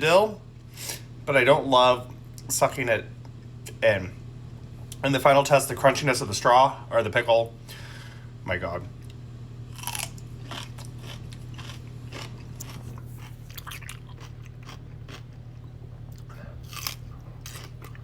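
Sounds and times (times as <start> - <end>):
person chewing crunchy pickle: 9.7 - 18.0.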